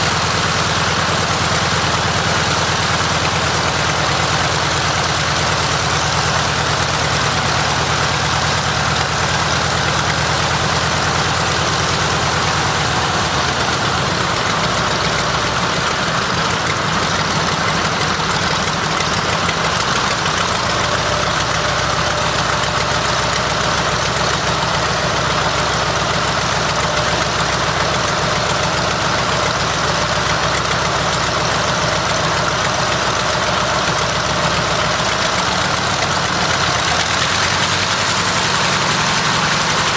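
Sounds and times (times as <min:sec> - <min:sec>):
radial aircraft engine running: 0:00.0 - 0:39.9.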